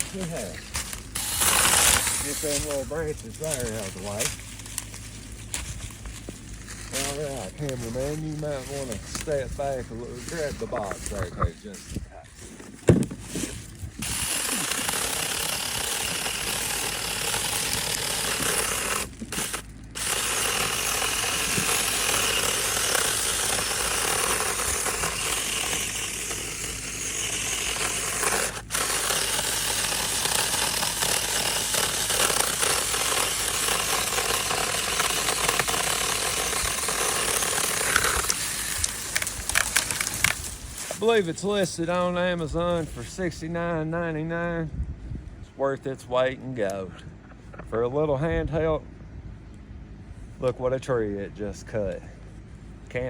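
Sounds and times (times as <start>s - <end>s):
battery chainsaw cutting: 0.0s - 5.0s, 5.6s - 11.7s, 12.9s - 42.2s.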